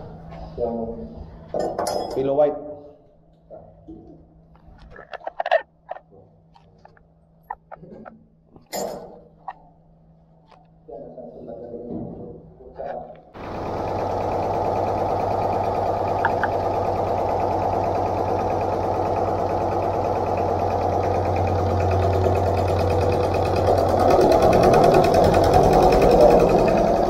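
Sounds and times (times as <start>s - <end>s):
diesel truck engine clattering: 13.4s - 27.0s.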